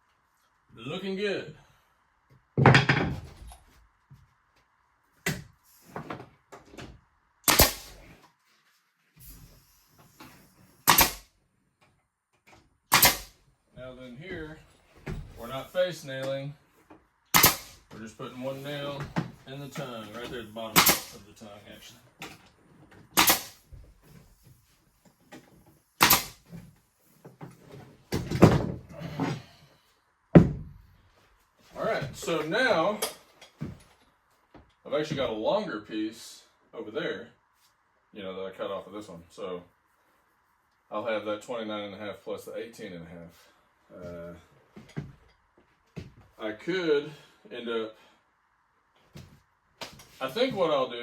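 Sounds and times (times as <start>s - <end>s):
knocks and thumps: 2.6s - 4.3s, 26.4s - 29.4s, 30.3s - 31.0s
nail gun firing: 7.4s - 8.1s, 10.8s - 11.3s, 12.9s - 13.4s, 17.3s - 17.8s, 20.8s - 21.2s, 23.2s - 23.6s, 26.0s - 26.5s
wooden boards knocking: 30.4s - 30.8s.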